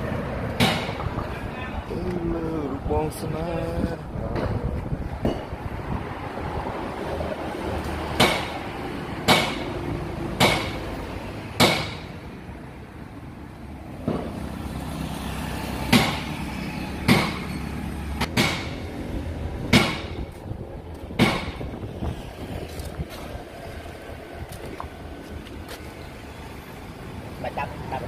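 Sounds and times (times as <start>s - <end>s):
hammer striking metal: 0.6s - 1.1s, 8.2s - 8.6s, 9.2s - 9.8s, 10.4s - 10.9s, 11.6s - 12.2s, 15.9s - 16.4s, 17.0s - 18.9s, 19.7s - 20.2s, 21.2s - 21.6s.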